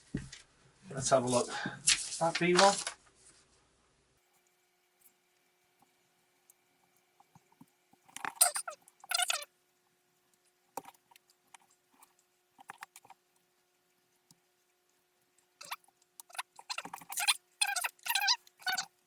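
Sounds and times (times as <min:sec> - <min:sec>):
plastic rustling: 0:01.8 - 0:03.6.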